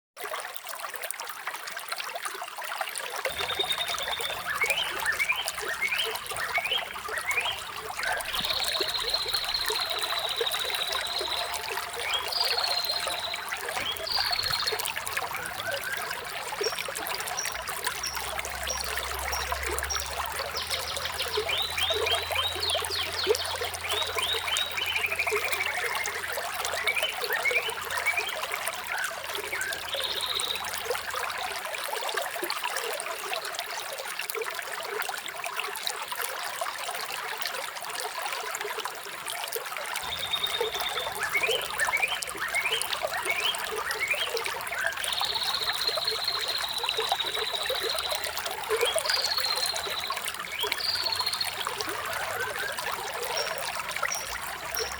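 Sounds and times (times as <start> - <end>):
water trickling: 0.2 - 54.9
songbirds chirping: 3.3 - 31.6, 40.0 - 54.9.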